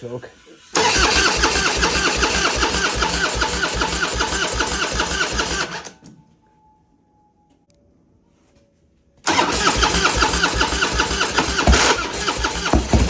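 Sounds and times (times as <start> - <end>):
engine knock: 0.8 - 5.2, 9.5 - 13.0
motorcycle engine running: 9.9 - 13.0.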